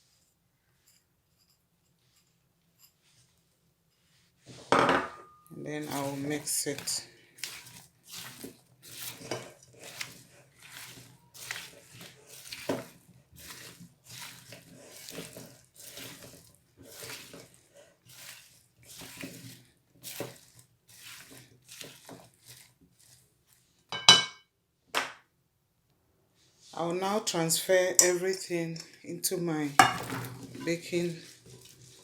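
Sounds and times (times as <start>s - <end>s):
vegetables tossed in a bowl: 5.7s - 23.6s, 27.8s - 32.0s.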